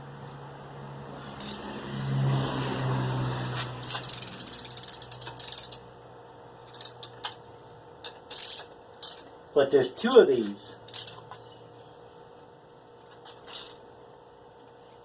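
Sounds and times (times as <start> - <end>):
ratchet wrench clicking: 1.4 - 1.7, 3.8 - 5.9, 6.7 - 7.4, 8.0 - 9.3, 10.8 - 11.3.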